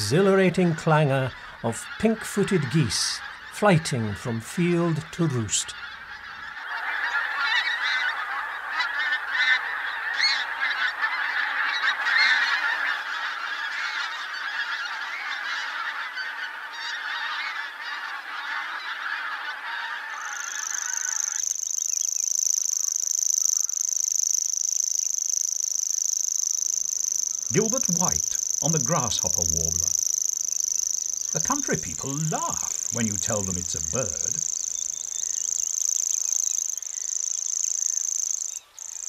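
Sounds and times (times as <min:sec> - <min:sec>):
geese honking: 0:00.0 - 0:21.5, 0:26.7 - 0:37.2
warbler reeling trill: 0:20.0 - 0:39.0.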